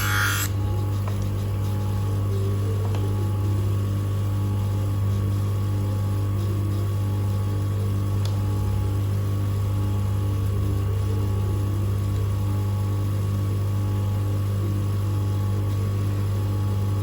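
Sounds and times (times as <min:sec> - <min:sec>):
lens edging machine motor hum: 0:00.0 - 0:00.7.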